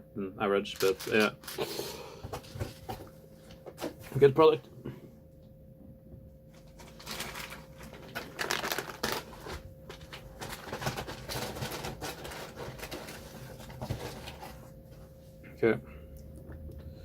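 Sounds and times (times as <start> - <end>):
packaging crackling: 0.8 - 1.8, 6.7 - 14.6.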